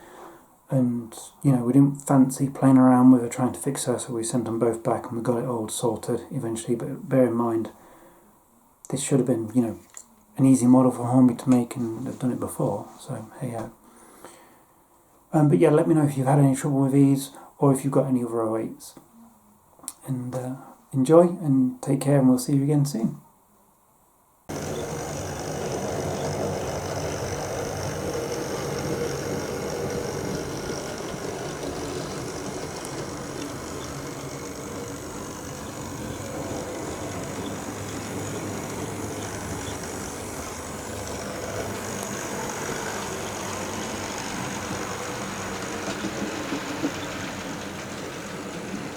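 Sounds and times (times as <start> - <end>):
engine running steadily: 24.5 - 47.2.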